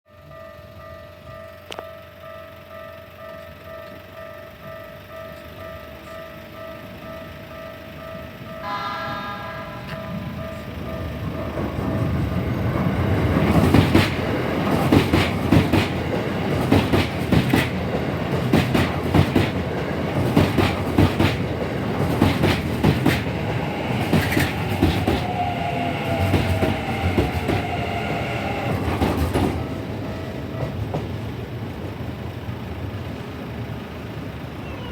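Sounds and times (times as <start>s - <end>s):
level crossing warning bell: 0.1s - 18.6s, 19.2s - 31.4s
train whining tone: 0.1s - 34.9s
train wheels clacking over rail joints: 8.6s - 32.0s.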